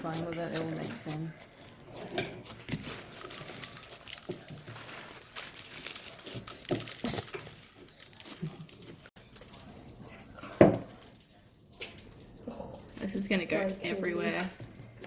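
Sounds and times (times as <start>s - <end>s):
slime squelching and crackling: 0.0s - 15.0s.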